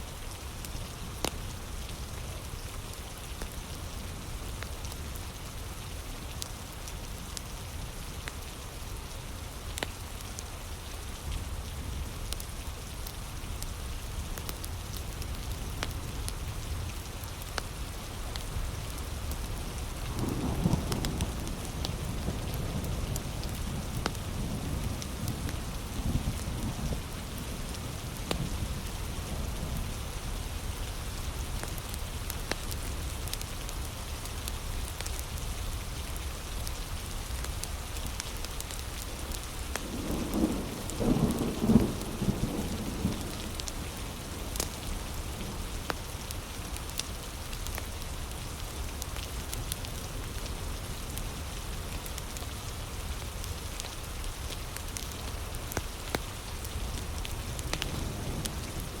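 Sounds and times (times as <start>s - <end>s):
heavy rain: 0.0s - 59.0s
wood fire crackling: 14.0s - 22.5s, 31.6s - 59.0s
thunder rumble: 39.8s - 45.6s.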